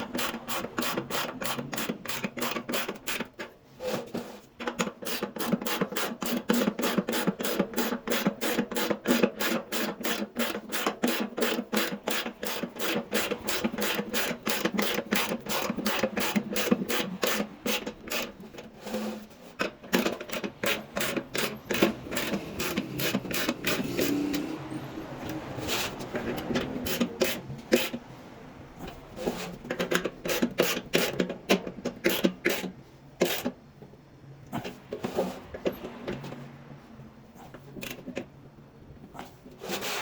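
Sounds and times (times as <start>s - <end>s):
hand tool ratcheting: 4.6s - 18.7s, 19.6s - 24.5s, 29.6s - 33.6s.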